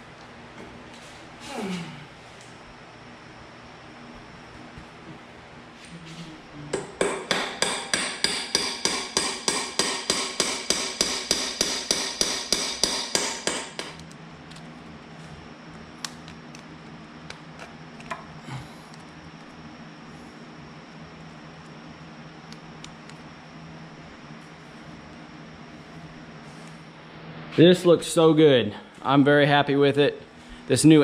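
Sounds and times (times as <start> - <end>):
hammer striking metal: 6.7 - 14.0.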